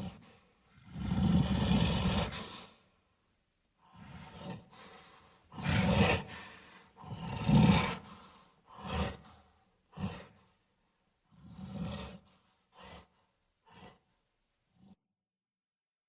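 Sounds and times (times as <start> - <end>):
gorilla growling roars: 0.8 - 2.7, 3.9 - 4.8, 5.5 - 9.2, 11.3 - 12.2.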